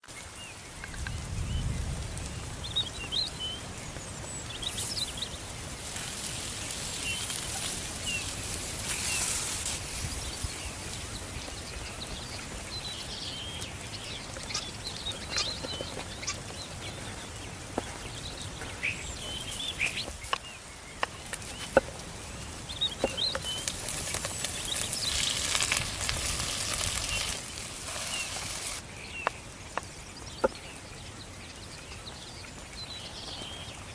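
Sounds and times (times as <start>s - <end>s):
outdoor ambience: 0.0s - 33.9s
small birds chirping: 0.0s - 33.9s
hissing: 23.6s - 28.8s.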